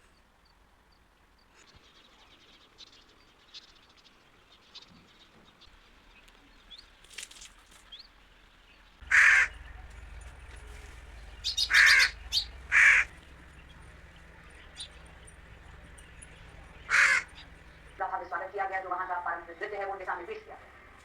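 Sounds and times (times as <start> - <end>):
faint bird chirps: 9.0 - 18.0
bird calling: 9.0 - 21.0.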